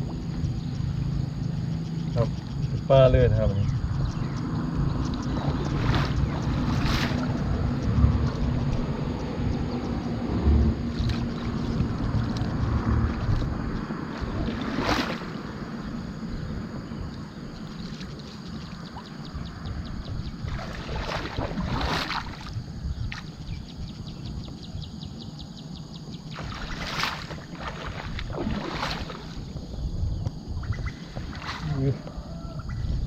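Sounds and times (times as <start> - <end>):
wind and water rushing: 3.8 - 24.0, 26.2 - 33.0
water splashing: 5.0 - 8.6, 10.2 - 16.0, 20.4 - 23.4, 26.3 - 29.6, 30.8 - 32.0.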